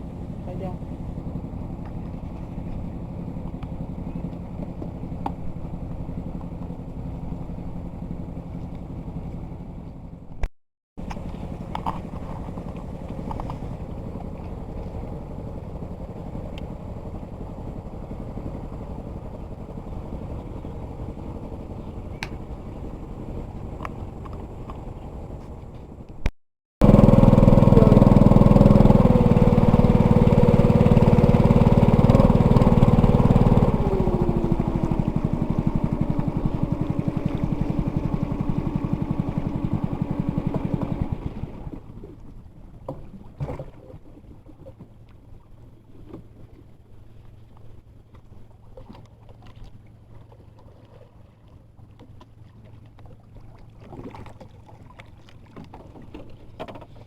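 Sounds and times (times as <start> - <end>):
low hum: 0.0 - 42.8
boat engine running: 0.0 - 57.0.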